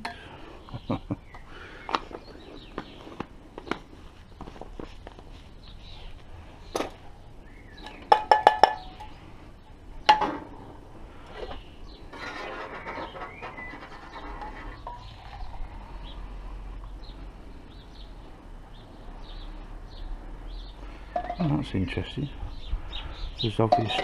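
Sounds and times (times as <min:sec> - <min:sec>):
metal pot clinking: 0:07.8 - 0:09.2, 0:21.1 - 0:21.5, 0:23.7 - 0:24.0.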